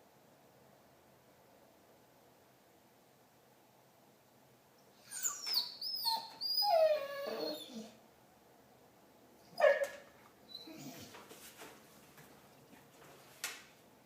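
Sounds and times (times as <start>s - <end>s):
dog whining and warbling: 5.0s - 8.0s, 9.5s - 11.1s.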